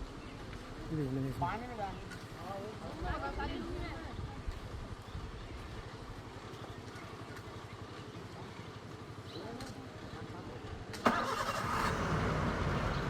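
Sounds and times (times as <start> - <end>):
vehicle engine idling: 5.8 - 13.0.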